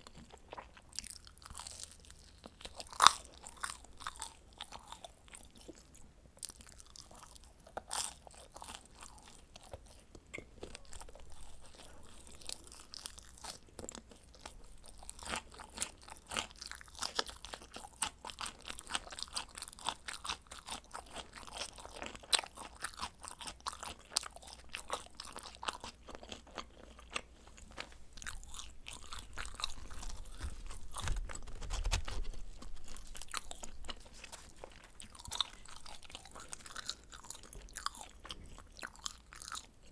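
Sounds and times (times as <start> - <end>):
person chewing pizza: 0.0 - 39.9
pizza crust crunching: 10.6 - 39.7.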